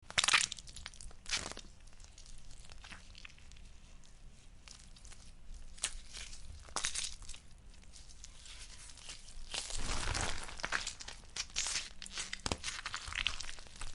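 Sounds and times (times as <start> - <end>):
gory tearing and crunching: 8.0 - 13.9.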